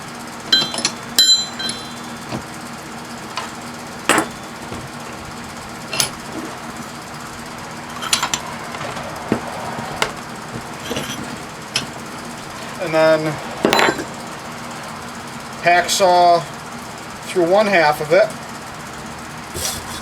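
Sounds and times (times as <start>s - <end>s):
metal clinks and knocks: 0.5s - 14.9s.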